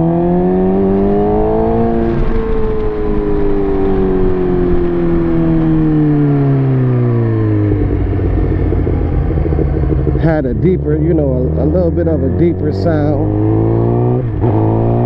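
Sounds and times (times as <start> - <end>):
motorcycle engine revving: 0.0 - 15.0.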